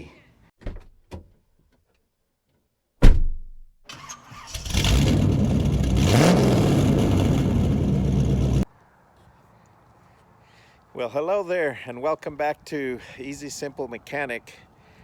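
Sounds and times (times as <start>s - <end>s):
loud thump: 3.0s - 3.6s
car engine starting and revving: 3.9s - 8.6s.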